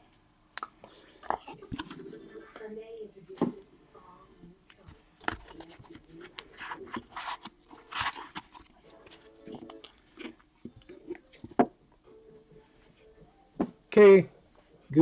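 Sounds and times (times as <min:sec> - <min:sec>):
cards and packaging rustling: 0:00.9 - 0:02.4, 0:04.7 - 0:11.8.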